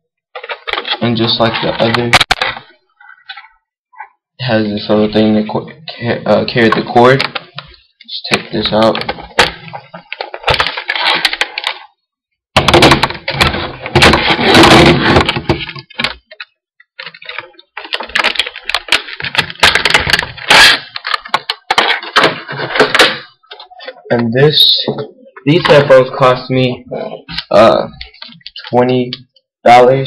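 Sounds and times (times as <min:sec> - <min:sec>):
box packaging rustling: 0:00.4 - 0:03.6, 0:08.8 - 0:11.9, 0:12.9 - 0:24.1.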